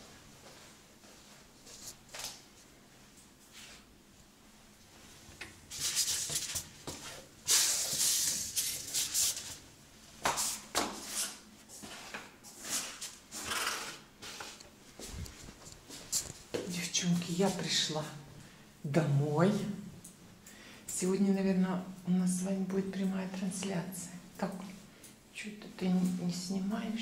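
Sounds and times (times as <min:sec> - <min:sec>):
rustling handling noise: 0:14.2 - 0:16.7.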